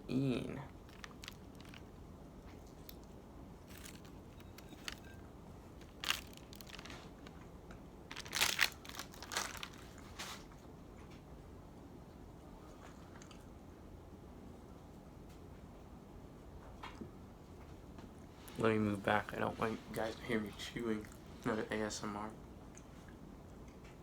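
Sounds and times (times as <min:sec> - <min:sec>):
crunchy chewing sounds: 0:00.7 - 0:05.2, 0:05.8 - 0:07.5, 0:08.1 - 0:11.2.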